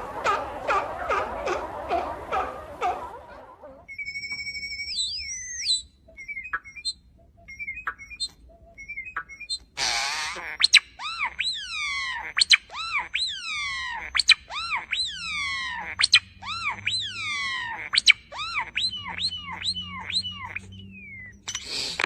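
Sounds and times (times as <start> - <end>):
animal crying: 0.0 - 4.0, 7.6 - 22.0.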